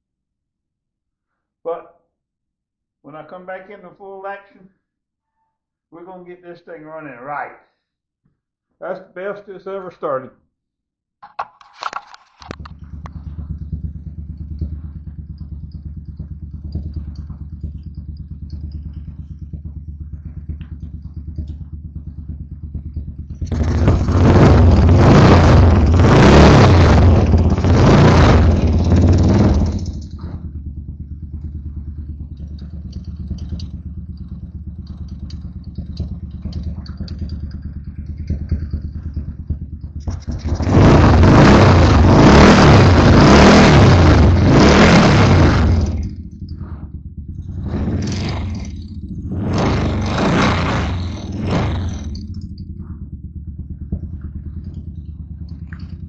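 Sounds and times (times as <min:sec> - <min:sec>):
motorcycle engine idling and revving: 0:12.0 - 0:56.0.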